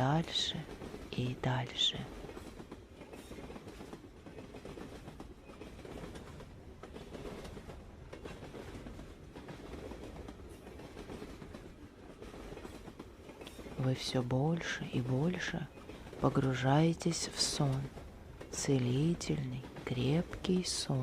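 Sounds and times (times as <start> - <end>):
low rumble of moving train: 0.0 - 21.0
train wheels clattering over rails: 2.2 - 13.9.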